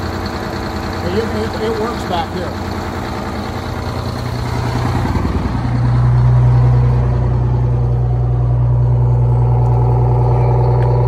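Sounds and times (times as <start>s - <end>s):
bus diesel engine running: 0.0s - 11.0s.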